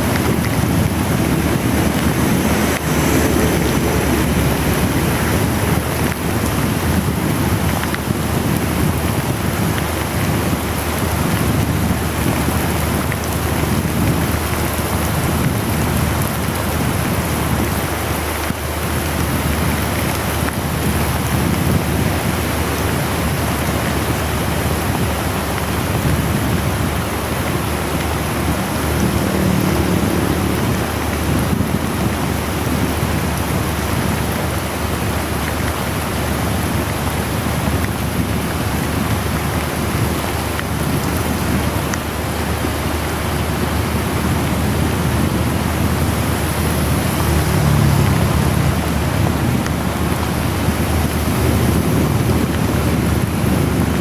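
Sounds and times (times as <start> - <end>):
low rumble: 0.0 - 8.0
heavy rain pouring: 0.0 - 54.0.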